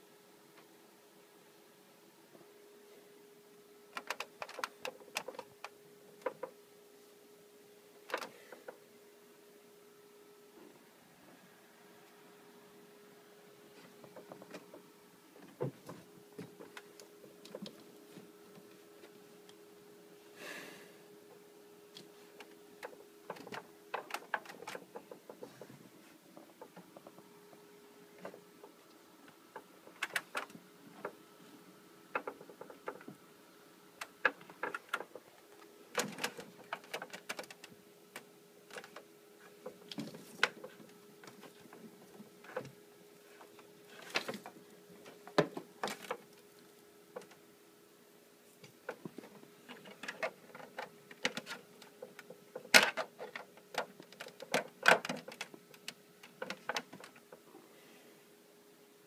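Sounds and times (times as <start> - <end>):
faint hum: 0.0 - 59.0
clicks taps and knocks: 21.9 - 25.7, 32.1 - 33.2.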